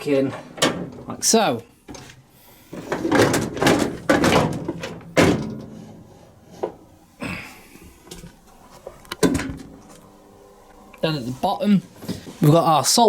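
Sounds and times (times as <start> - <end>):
dishwasher racks clattering: 0.2 - 1.3, 2.8 - 5.9.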